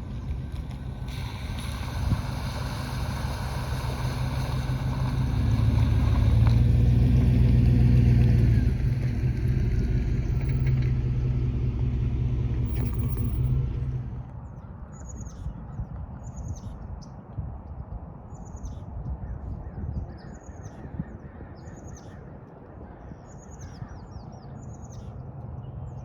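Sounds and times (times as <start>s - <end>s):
engine running: 0.0s - 14.4s.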